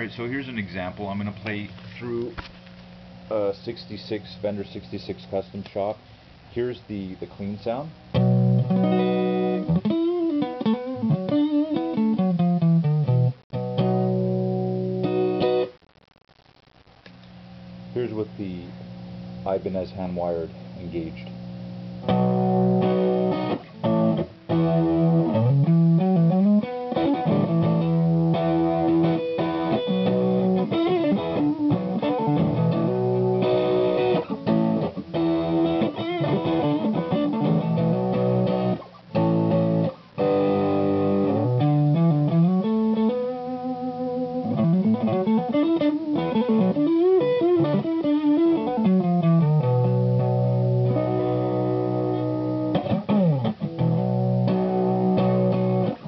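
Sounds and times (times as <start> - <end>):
overdriven electric guitar riff: 8.0 - 18.0, 21.4 - 56.0.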